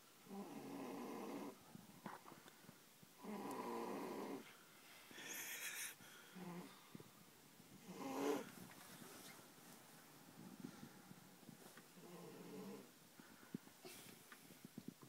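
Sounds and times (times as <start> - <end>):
girl snoring heavily: 0.3 - 1.6, 3.2 - 4.5, 5.1 - 6.8, 7.8 - 8.5, 12.0 - 12.9
hissing breath: 5.0 - 6.4.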